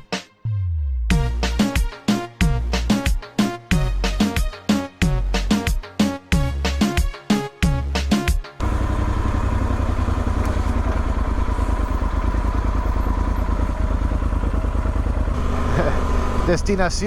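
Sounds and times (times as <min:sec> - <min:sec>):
music: 0:00.0 - 0:08.6
motorcycle engine running: 0:08.6 - 0:17.0.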